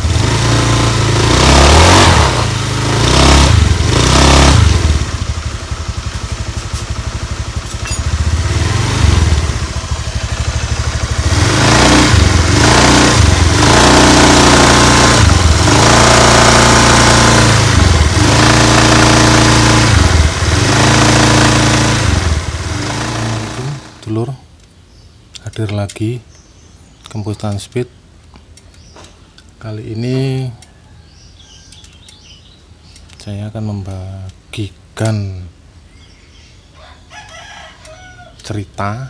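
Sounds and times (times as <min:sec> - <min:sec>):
scooter engine revving: 0:00.0 - 0:24.1.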